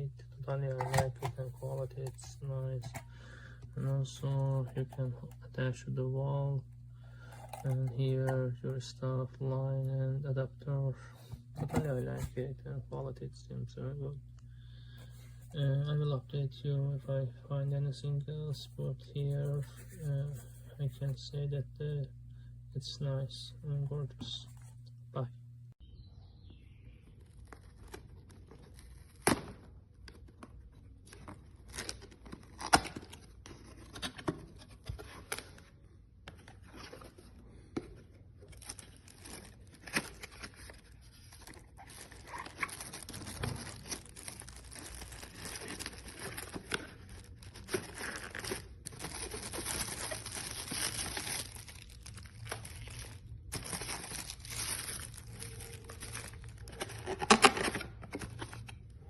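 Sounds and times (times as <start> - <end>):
packaging rustling and tearing: 0.7 - 3.1, 31.1 - 35.6, 38.4 - 58.8.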